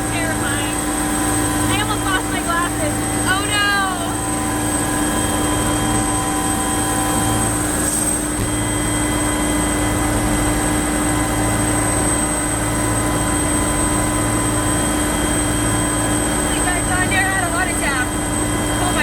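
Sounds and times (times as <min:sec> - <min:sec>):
high whine: 0:00.0 - 0:14.2
helicopter engine and rotor: 0:00.0 - 0:19.0.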